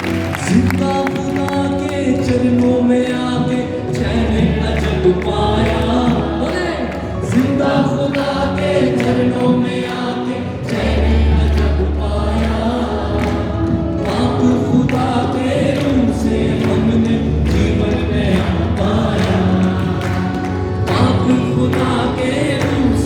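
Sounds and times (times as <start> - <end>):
deep bass notes: 0.0 - 23.0
voices singing over a band: 0.5 - 23.0.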